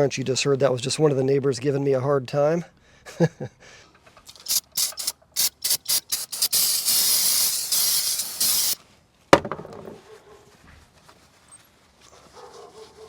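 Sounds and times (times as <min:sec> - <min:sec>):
aerosol spray can hissing: 0:04.3 - 0:08.8.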